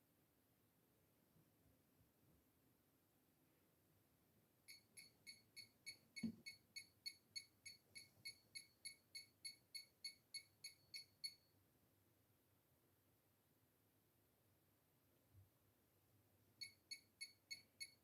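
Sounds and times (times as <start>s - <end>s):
faint rapid electronic beeping: 4.7s - 11.5s, 16.6s - 18.0s.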